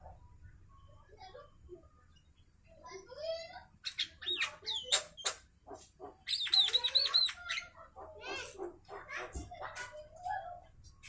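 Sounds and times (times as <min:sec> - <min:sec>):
bird whistles and clicks: 0:04.8 - 0:05.4.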